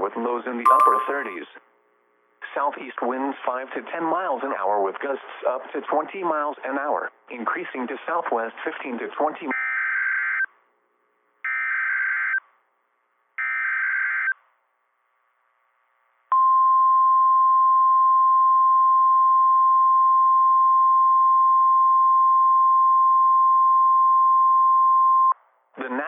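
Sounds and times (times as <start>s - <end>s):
steady alarm tone: 0.7s - 1.4s.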